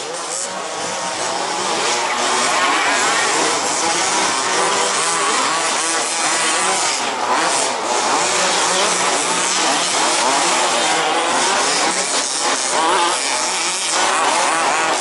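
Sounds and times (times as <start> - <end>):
small two-stroke engines buzzing: 0.0 - 15.0.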